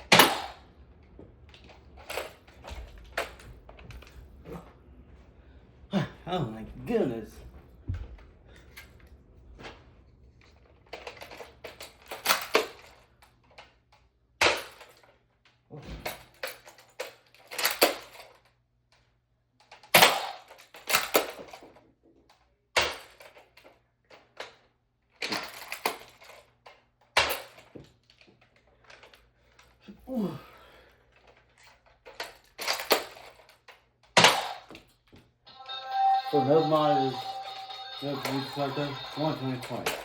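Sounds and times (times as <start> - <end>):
toy dart blasters firing: 0.1 - 0.6.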